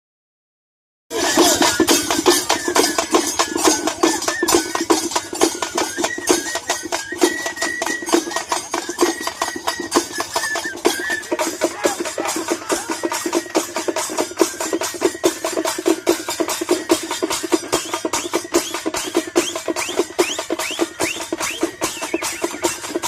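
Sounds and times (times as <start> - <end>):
high melody line: 1.1 - 23.0
fast dense drumming: 8.1 - 23.0.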